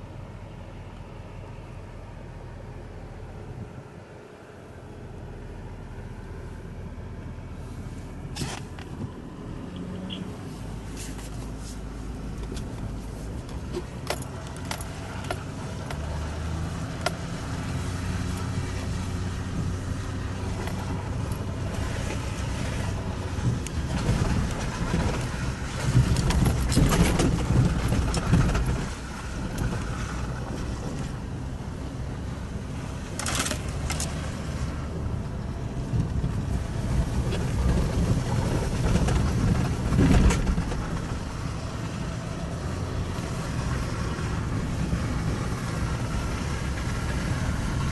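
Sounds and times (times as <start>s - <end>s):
vehicle rumble: 0.0s - 47.9s.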